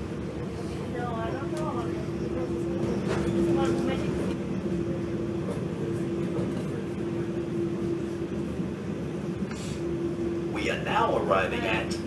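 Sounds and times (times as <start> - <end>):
train carriage rumble and hum: 0.0 - 12.0.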